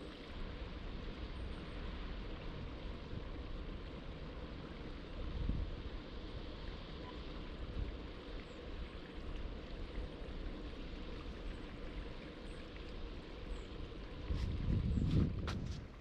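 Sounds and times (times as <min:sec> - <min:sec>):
wind rumble on microphone: 0:00.0 - 0:16.0
coastal wind: 0:13.3 - 0:16.0.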